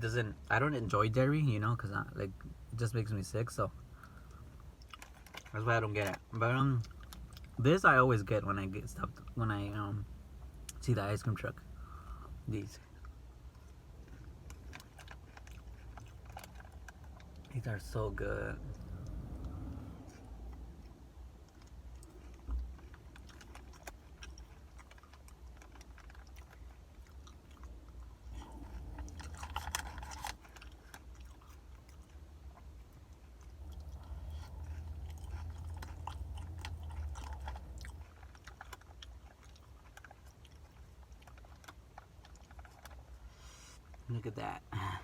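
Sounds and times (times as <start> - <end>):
person chewing crunchy chips: 12.9 - 17.6, 18.2 - 43.2.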